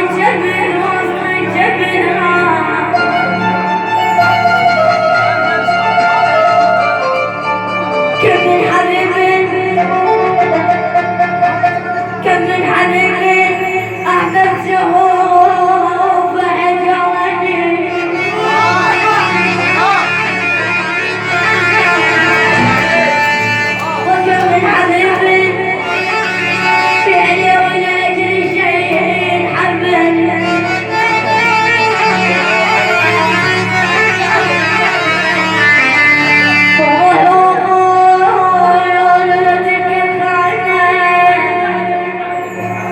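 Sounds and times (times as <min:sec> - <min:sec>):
song with string-like melody: 0:00.0 - 0:13.4, 0:17.4 - 0:37.7
steady low beat: 0:18.4 - 0:24.8.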